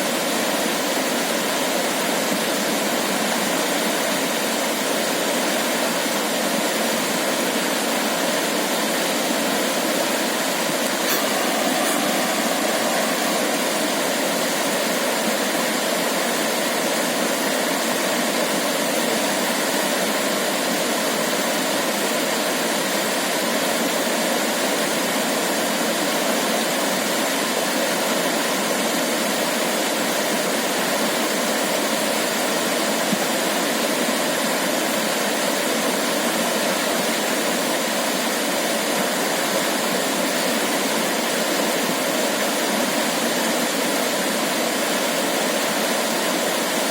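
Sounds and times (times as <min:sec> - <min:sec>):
steady rushing noise: 0:08.4 - 0:18.0.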